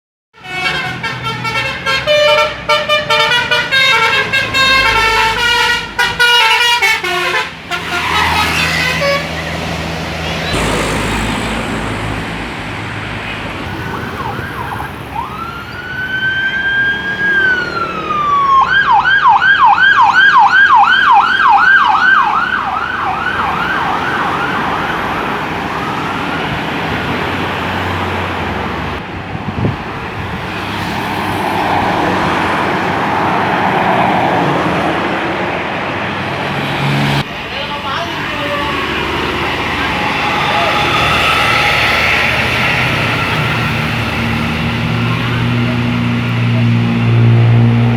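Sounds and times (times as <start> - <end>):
melodic bus horn tune: 0.3 - 11.3
siren-style horn warbling: 0.4 - 10.8, 13.6 - 29.0, 38.3 - 47.9
bus passing: 0.4 - 47.9.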